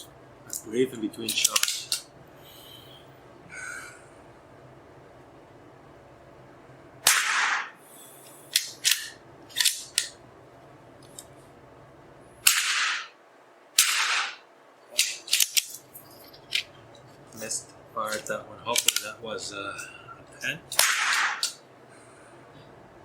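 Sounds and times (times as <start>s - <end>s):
rifle shots: 7.0s - 7.8s, 12.4s - 13.1s, 13.8s - 14.4s, 20.7s - 21.6s.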